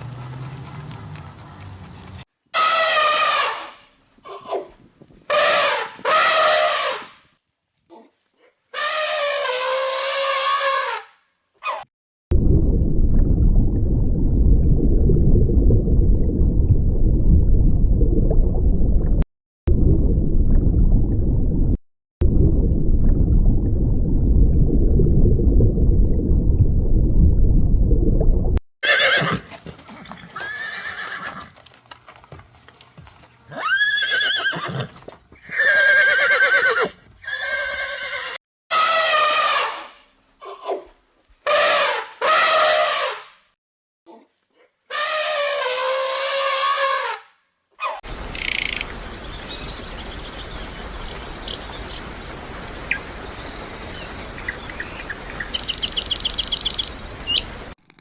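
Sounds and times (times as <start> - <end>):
loud low rumbling: 12.3 - 28.6.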